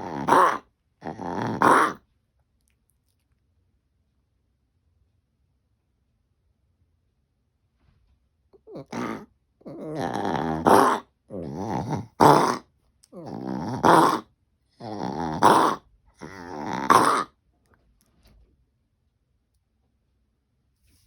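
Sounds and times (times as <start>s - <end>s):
dog coughing and hacking: 0.0s - 2.0s, 8.6s - 11.0s, 11.8s - 12.6s, 13.7s - 14.2s, 15.3s - 17.3s.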